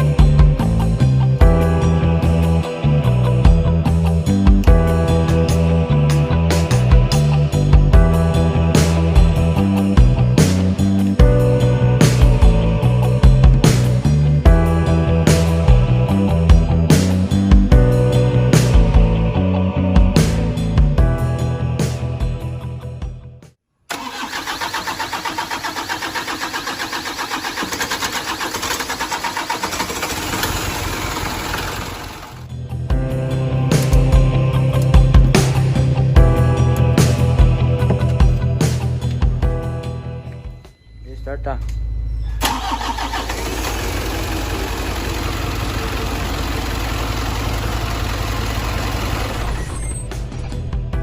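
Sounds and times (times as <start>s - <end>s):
engine cranking on starter motor: 23.9s - 32.5s, 42.4s - 50.4s.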